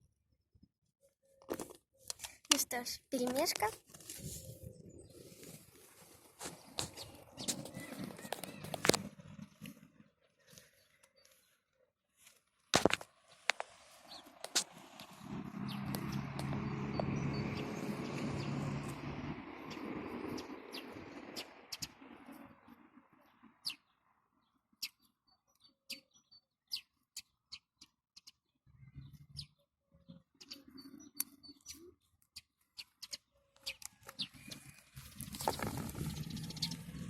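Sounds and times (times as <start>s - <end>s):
soft rustling: 3.6s - 8.8s.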